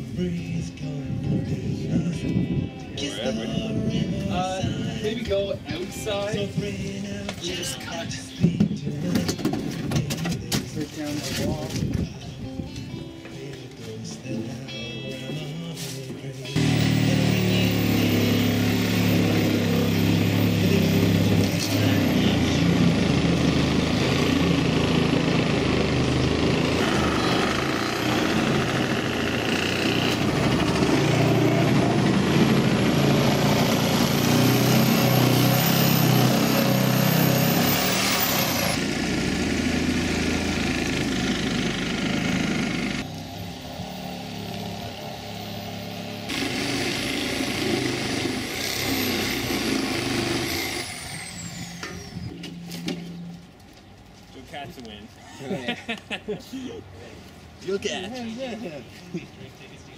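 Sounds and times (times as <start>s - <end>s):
truck engine running: 16.6s - 54.1s.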